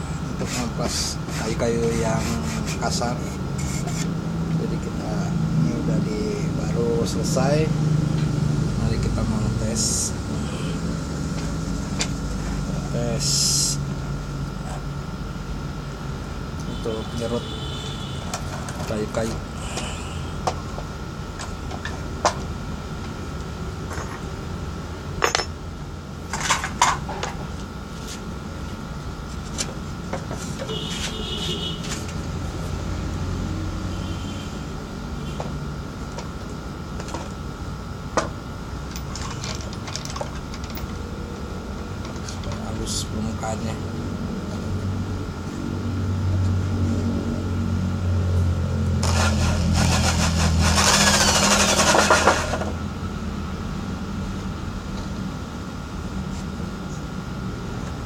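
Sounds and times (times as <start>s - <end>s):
wood being sanded: 0.4s - 4.1s, 49.0s - 52.6s
high-pitched drill whine: 8.4s - 13.9s, 16.7s - 18.4s, 19.5s - 20.5s, 32.4s - 35.4s
electric drill motor hum: 49.0s - 52.7s.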